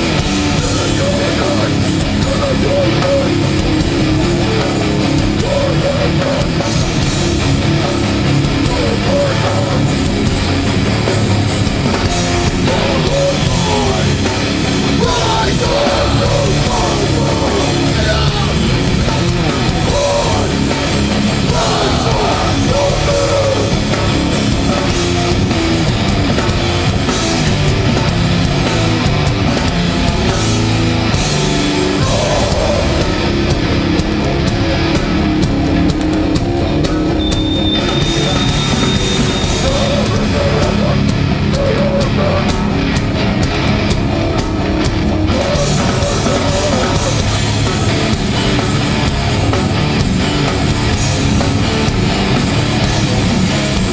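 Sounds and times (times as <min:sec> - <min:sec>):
bass guitar: 0:00.0 - 0:53.9
distorted electric guitars: 0:00.0 - 0:53.9
pounding drum kit: 0:00.0 - 0:53.9
shouted vocals: 0:12.6 - 0:24.4, 0:31.8 - 0:33.4, 0:36.6 - 0:43.4.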